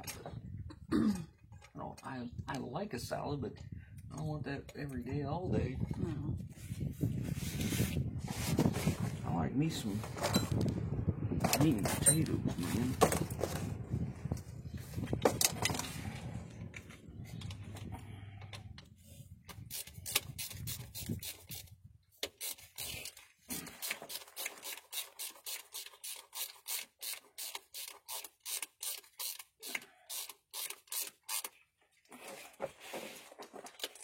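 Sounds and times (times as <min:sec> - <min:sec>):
hand tool rasping strokes: 0:19.6 - 0:31.6.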